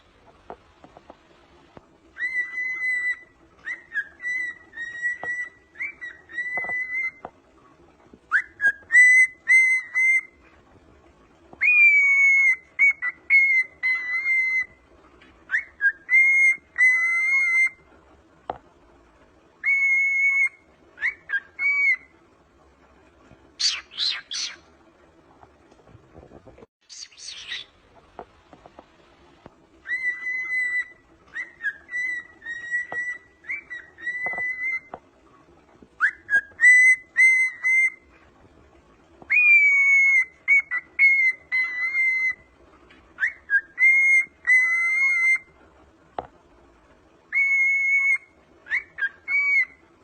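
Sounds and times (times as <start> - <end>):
cockatiel whistling: 2.1 - 7.3, 8.3 - 10.4, 11.6 - 14.8, 15.5 - 17.8, 19.6 - 22.1, 23.6 - 24.6, 26.9 - 27.7, 29.8 - 35.0, 36.0 - 38.1, 39.3 - 42.5, 43.2 - 45.6, 47.3 - 49.8
harsh bird chirps: 2.2 - 7.2, 11.6 - 14.8, 23.6 - 24.7, 26.8 - 27.8, 29.8 - 34.9, 36.0 - 38.1, 39.3 - 42.5, 43.2 - 45.5.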